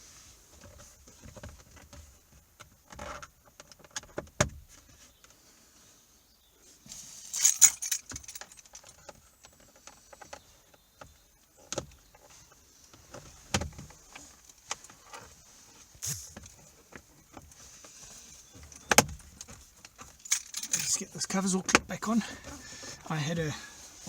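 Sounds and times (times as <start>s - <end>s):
keys jangling: 7.3s - 9.0s, 20.1s - 21.0s.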